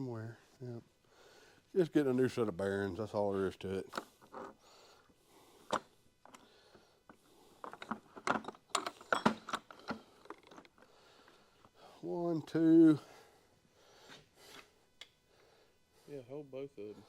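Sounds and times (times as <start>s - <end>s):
metal tools clinking: 7.7s - 10.7s.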